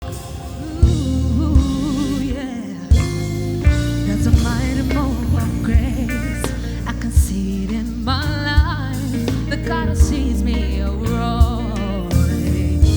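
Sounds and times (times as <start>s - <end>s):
bass: 0.0s - 12.9s
solo voice singing: 0.0s - 12.9s
drum beat: 2.9s - 8.0s.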